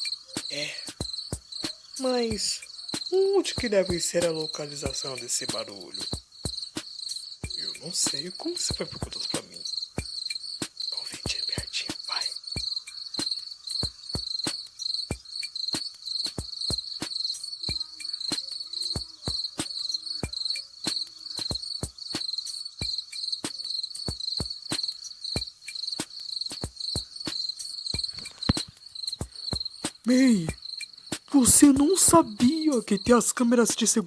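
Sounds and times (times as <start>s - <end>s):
crickets chirping: 0.0s - 34.0s
sharp clicks: 28.0s - 30.1s.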